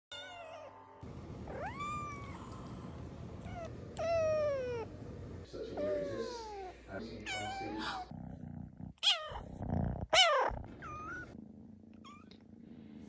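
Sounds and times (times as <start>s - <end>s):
cat meowing: 0.1s - 0.8s, 1.4s - 2.8s, 3.4s - 4.9s, 5.8s - 8.1s, 9.0s - 9.4s, 10.1s - 11.3s.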